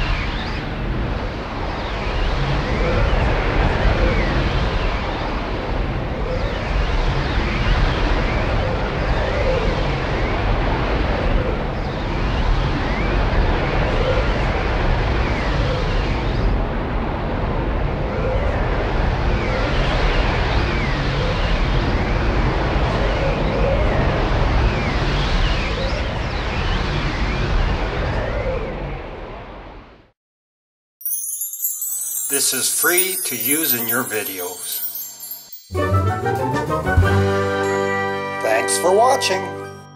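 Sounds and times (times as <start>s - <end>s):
swooping rising and falling tones: 31.0s - 39.6s.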